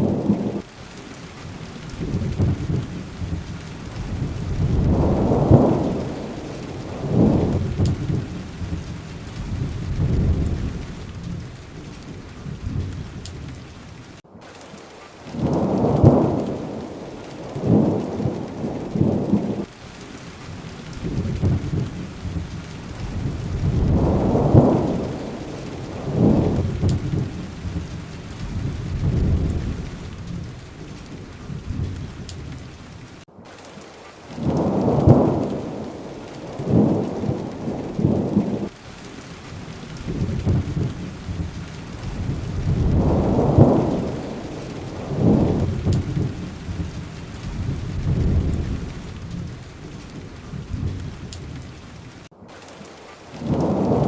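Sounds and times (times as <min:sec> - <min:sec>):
thunder rumbling: 0:00.0 - 0:52.8, 0:53.4 - 0:54.0
steady rain: 0:00.0 - 0:54.0.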